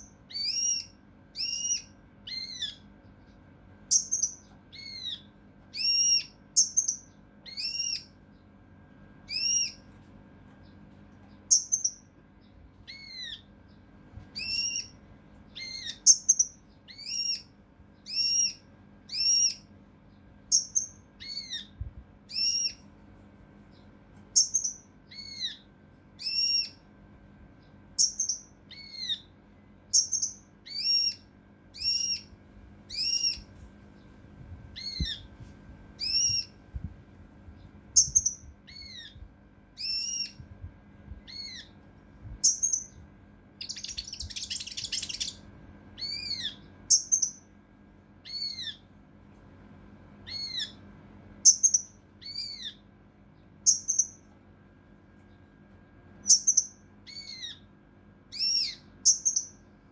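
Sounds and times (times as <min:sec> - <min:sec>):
songbird calling harsh notes: 0:00.0 - 0:02.9, 0:03.9 - 0:08.1, 0:09.3 - 0:09.8, 0:11.5 - 0:12.0, 0:12.9 - 0:13.5, 0:14.4 - 0:19.7, 0:20.5 - 0:22.8, 0:24.4 - 0:26.8, 0:28.0 - 0:29.3, 0:30.0 - 0:31.2, 0:31.8 - 0:32.3, 0:36.0 - 0:36.6, 0:38.0 - 0:39.2, 0:39.8 - 0:40.4, 0:43.6 - 0:45.4, 0:46.0 - 0:47.4, 0:50.3 - 0:50.8, 0:56.3 - 0:57.6, 0:58.3 - 0:59.6.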